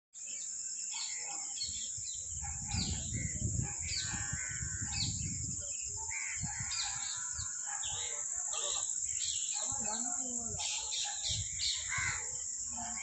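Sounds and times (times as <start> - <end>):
birds calling: 0.3 - 13.0
insect drone: 11.3 - 13.0.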